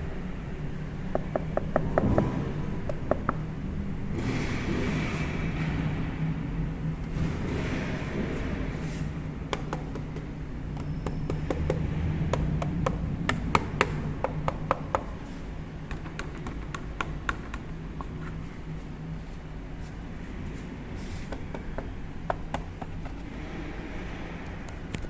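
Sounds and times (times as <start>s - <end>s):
sharp taps and clicks: 9.5s - 15.1s, 15.9s - 18.2s, 21.3s - 23.2s.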